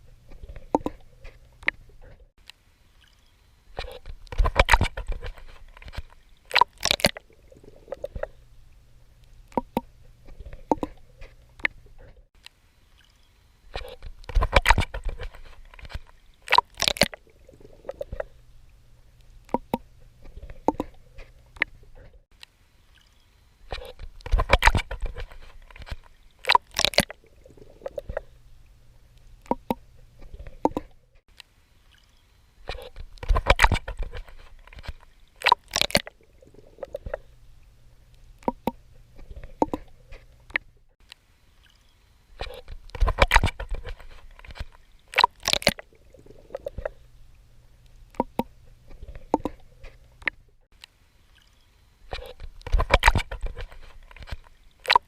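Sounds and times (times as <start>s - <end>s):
swimming strokes splashing: 31.9s - 37.4s.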